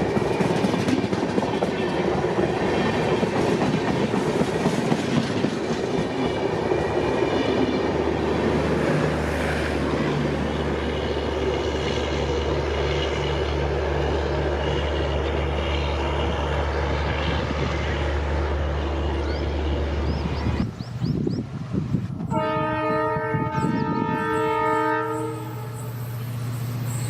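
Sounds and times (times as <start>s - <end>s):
train wheels clattering on track: 0.0s - 21.4s.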